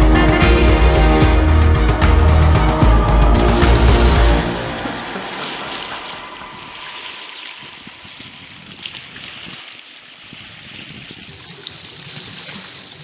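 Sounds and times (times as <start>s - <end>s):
small waves lapping: 3.5s - 13.0s.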